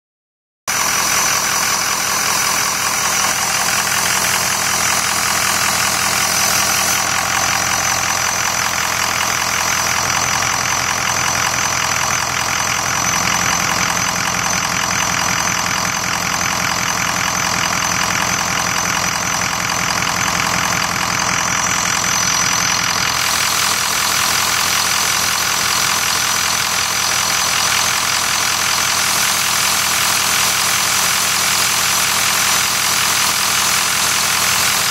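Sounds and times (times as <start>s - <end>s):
diesel engine idling: 0.7s - 34.9s
turbo whistle: 2.3s - 9.0s.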